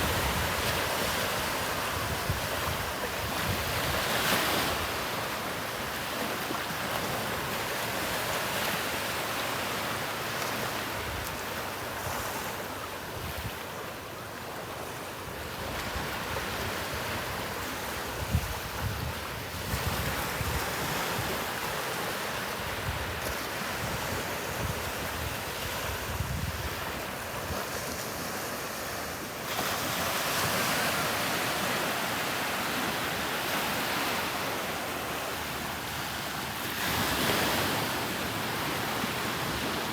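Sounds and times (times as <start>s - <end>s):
surf washing onto beach: 0.0s - 13.0s, 15.6s - 39.9s
wind buffeting microphone: 15.6s - 21.6s, 22.6s - 28.3s.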